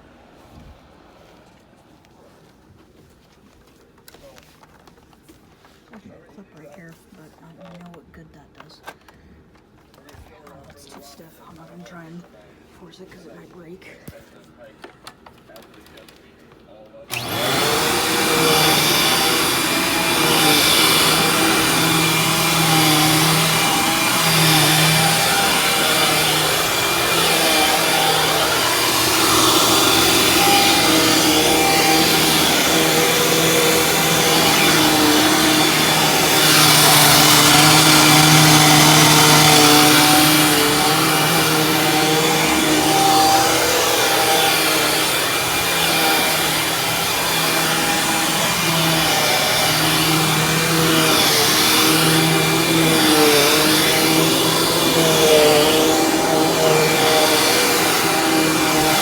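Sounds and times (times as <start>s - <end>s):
upright vacuum cleaner droning: 17.1s - 59.0s.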